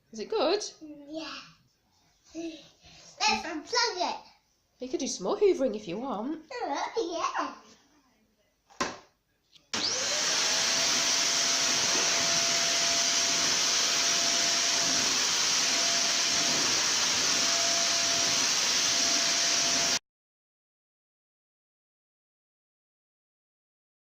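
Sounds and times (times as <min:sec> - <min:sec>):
vacuum cleaner running: 0:09.7 - 0:20.0.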